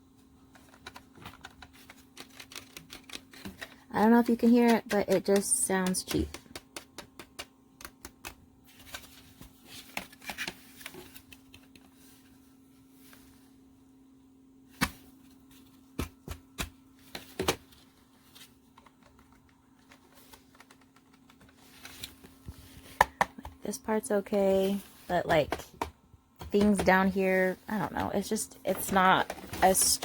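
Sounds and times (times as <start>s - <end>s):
plastic parts clicking and knocking: 0.5s - 3.8s, 4.7s - 8.4s, 28.8s - 30.0s.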